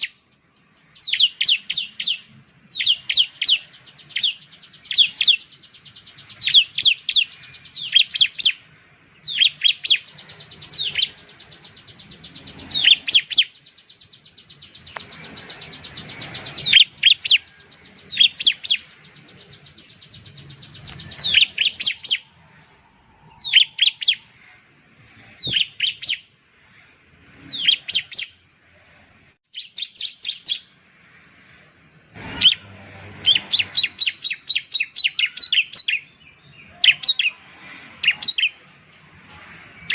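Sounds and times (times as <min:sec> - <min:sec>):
bird singing high trills: 0:00.0 - 0:28.4, 0:29.4 - 0:30.9, 0:31.6 - 0:39.9.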